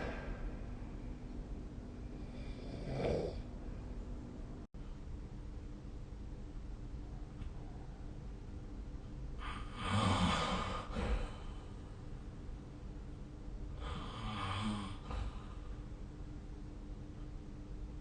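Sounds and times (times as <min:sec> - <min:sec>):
person snoring: 0:02.2 - 0:03.5, 0:09.4 - 0:11.7, 0:13.8 - 0:15.7.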